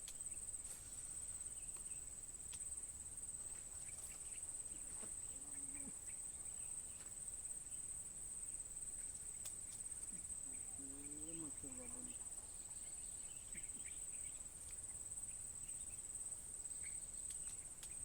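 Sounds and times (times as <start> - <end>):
faint ticks: 0.0 - 0.4, 1.7 - 2.8, 9.2 - 12.1, 14.6 - 15.0, 16.8 - 18.0
insects trilling: 0.0 - 18.0.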